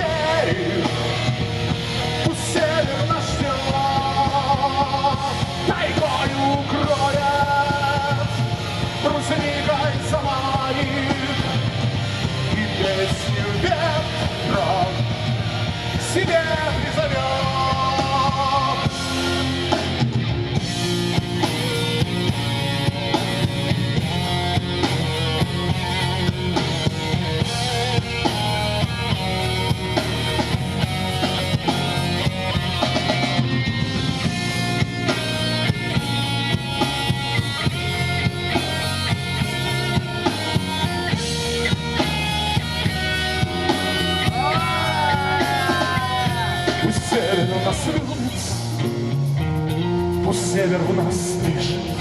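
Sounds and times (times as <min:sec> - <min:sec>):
bass guitar: 0:00.0 - 0:52.0
drum kit steady beat: 0:00.0 - 0:52.0
electric guitars: 0:00.0 - 0:52.0.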